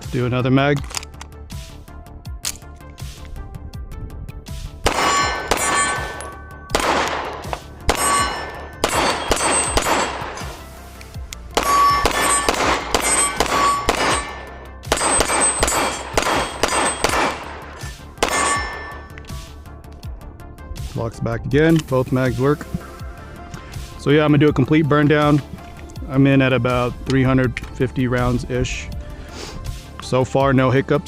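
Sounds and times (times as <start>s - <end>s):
pistol shots: 4.8s - 10.6s, 11.5s - 19.2s
metallic ringing clang: 4.9s - 6.5s, 7.9s - 10.5s, 11.6s - 19.2s.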